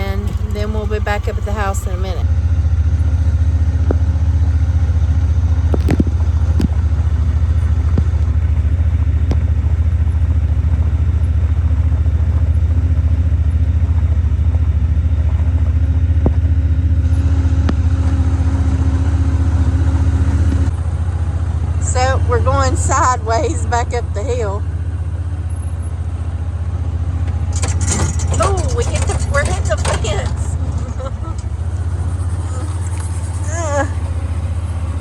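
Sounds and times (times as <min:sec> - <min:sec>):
farm vehicle engine droning: 0:00.0 - 0:35.0
knocks and rattles: 0:03.7 - 0:18.8, 0:27.2 - 0:35.0.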